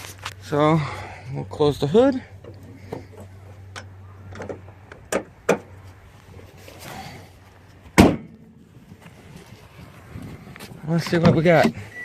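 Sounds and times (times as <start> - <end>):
car hood slamming: 8.0 - 8.3.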